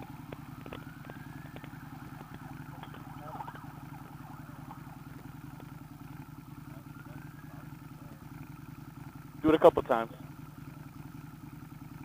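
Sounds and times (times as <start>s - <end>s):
faint wailing siren: 0.0s - 9.2s
scooter engine idling: 0.0s - 12.0s.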